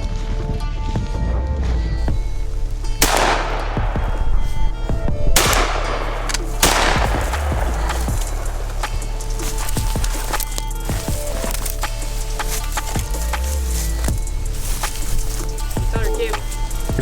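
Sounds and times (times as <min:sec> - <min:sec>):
background music: 0:00.0 - 0:17.0
shotgun shots echoing: 0:02.0 - 0:10.6.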